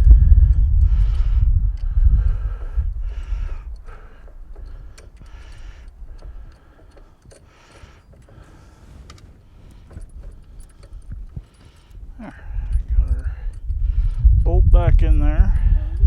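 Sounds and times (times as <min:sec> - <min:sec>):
light metal clicks and taps: 0:00.4 - 0:16.0
handling rustle: 0:02.7 - 0:13.8.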